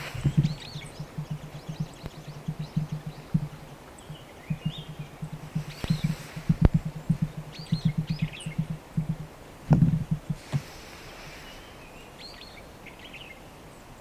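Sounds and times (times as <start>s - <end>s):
low uneven throbbing: 0.0s - 10.6s
sharp knocks: 0.0s - 10.7s
small birds chirping: 0.0s - 13.9s.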